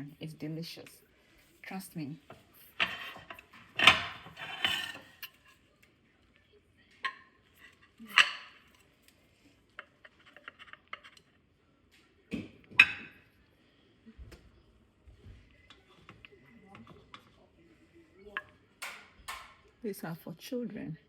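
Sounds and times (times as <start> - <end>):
utensils clinking against dishes: 2.3 - 5.6, 7.0 - 8.9, 12.7 - 13.4, 18.3 - 19.7.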